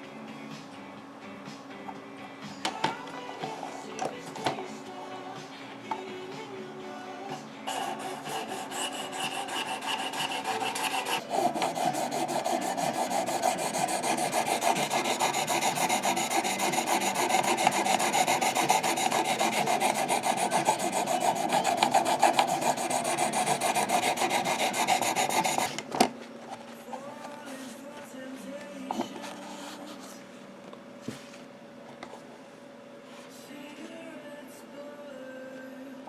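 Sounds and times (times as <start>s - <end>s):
knife rasping on sharpening plate: 7.7s - 25.8s.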